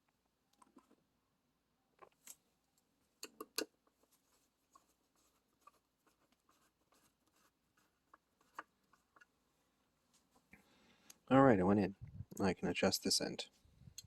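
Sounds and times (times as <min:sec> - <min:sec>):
faint scratching: 0:04.0 - 0:09.3.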